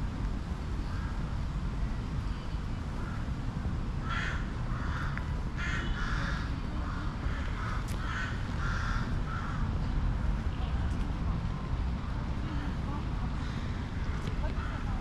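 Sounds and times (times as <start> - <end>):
wind rumbling on microphone: 0.0 - 15.0
crows cawing: 4.0 - 9.8, 13.4 - 15.0.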